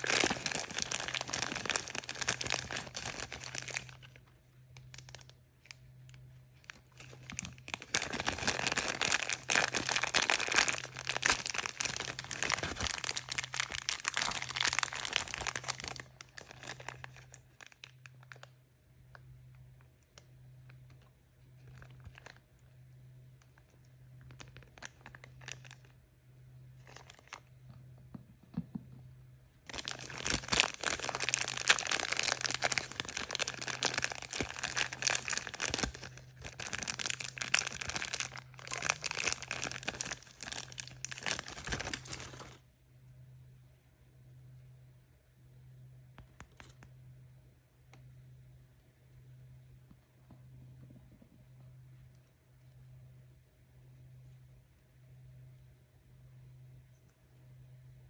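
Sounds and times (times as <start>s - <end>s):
packaging crinkling and tearing: 0.0s - 4.2s, 4.8s - 18.5s, 21.6s - 22.4s, 24.2s - 26.0s, 26.8s - 27.4s, 29.7s - 42.6s.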